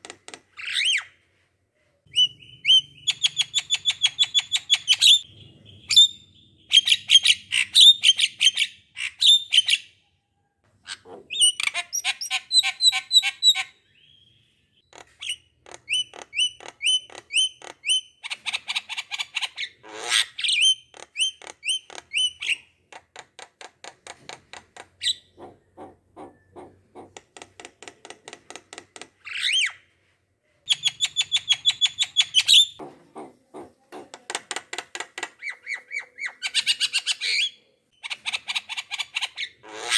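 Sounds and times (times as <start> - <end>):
bird chirping rapidly: 2.1 - 9.9, 25.0 - 27.2, 30.7 - 34.1.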